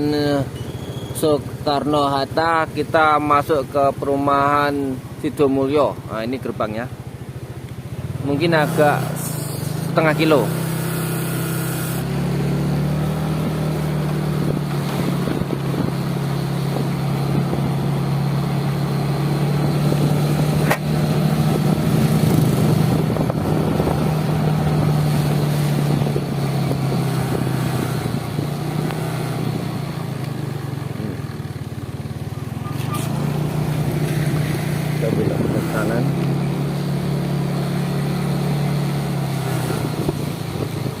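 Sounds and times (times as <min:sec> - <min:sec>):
road and wind noise: 0:00.0 - 0:41.0
vehicle engine running: 0:00.0 - 0:41.0
sharp click: 0:20.6 - 0:20.9.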